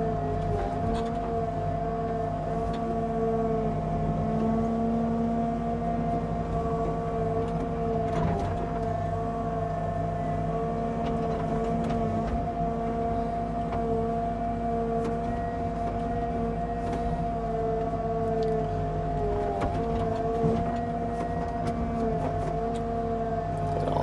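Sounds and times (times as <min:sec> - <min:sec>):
excavator engine running: 0:00.0 - 0:24.0
hydraulic whine: 0:00.0 - 0:24.0.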